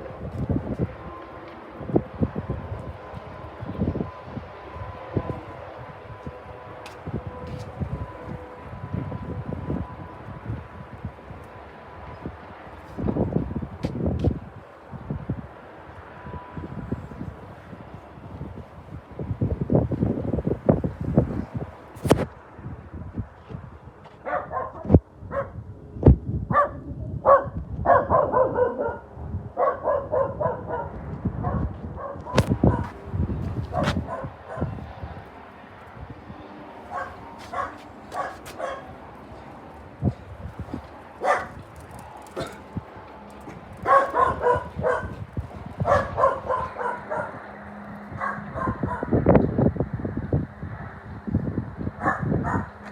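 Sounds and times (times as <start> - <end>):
wind buffeting microphone: 0.0 - 52.9
dog barking: 24.2 - 25.6, 26.5 - 33.0, 33.7 - 34.8, 36.9 - 39.0, 41.2 - 41.6, 43.8 - 45.2, 45.8 - 47.4, 48.2 - 49.2, 52.0 - 52.8.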